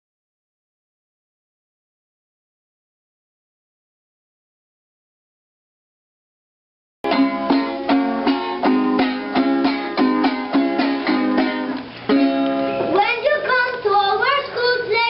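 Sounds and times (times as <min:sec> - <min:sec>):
plucked string instrument music: 0:07.0 - 0:13.8.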